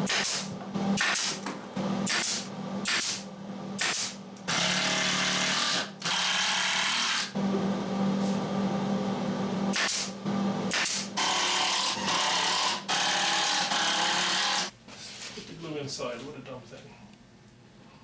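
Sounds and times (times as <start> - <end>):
power tool motor bursts: 3.8 - 7.3, 10.7 - 14.7.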